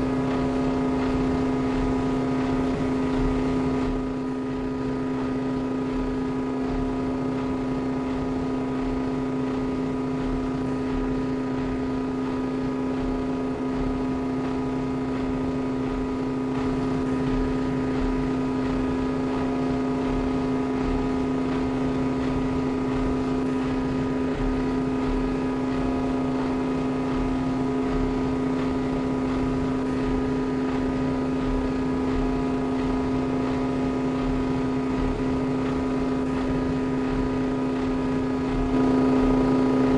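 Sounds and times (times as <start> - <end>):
steady machine hum: 0.0 - 39.9.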